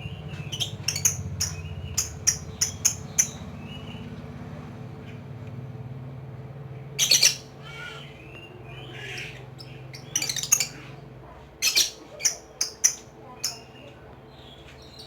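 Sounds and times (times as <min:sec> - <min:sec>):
soft bird chirps: 0:00.0 - 0:04.3
lovebird shrill chattering calls: 0:00.4 - 0:03.8, 0:07.0 - 0:10.8.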